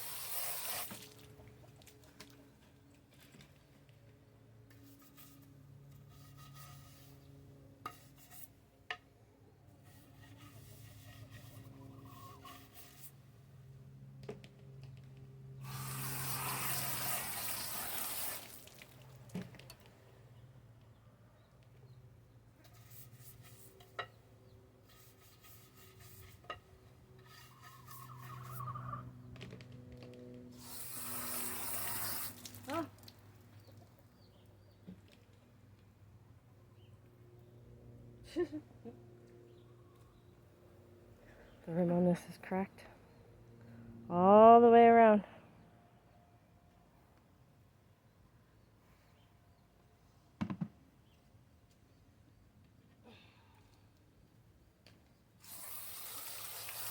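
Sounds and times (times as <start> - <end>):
faint rubbing or scraping: 4.7 - 8.6, 9.8 - 13.2, 24.8 - 26.5, 27.2 - 28.9.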